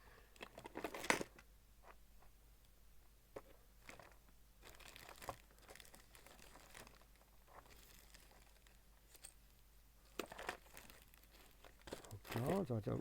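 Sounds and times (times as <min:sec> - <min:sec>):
faint plastic packaging rustling: 0:03.3 - 0:13.0.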